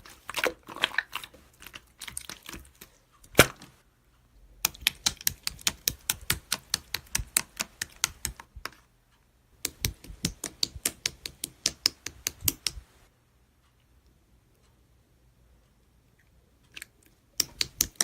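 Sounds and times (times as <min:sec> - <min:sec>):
rapid sharp clicks: 0:04.6 - 0:08.7.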